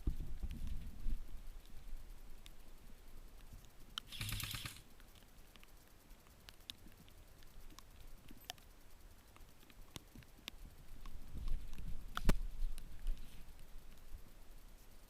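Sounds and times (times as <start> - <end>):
faint sharp ticks: 0.4 - 15.0
airsoft gunfire burst: 4.1 - 4.9.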